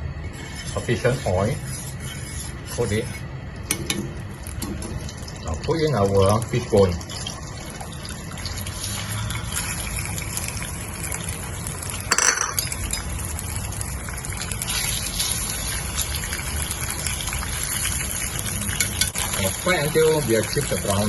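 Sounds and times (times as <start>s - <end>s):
fish bones sizzling in oil: 4.2s - 21.0s.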